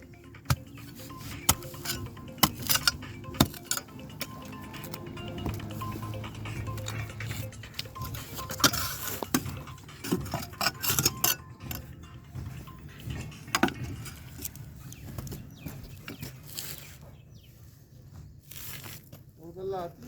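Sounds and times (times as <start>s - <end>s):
sharp clinks and knocks: 7.9s - 14.6s.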